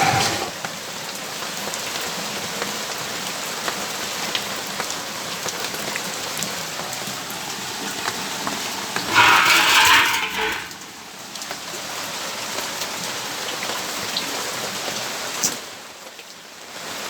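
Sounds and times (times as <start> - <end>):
rushing surge: 0.0 - 0.6.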